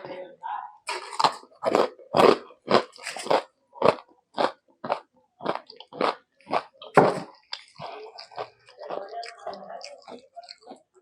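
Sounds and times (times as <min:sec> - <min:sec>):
crunchy chewing: 0:00.9 - 0:11.0.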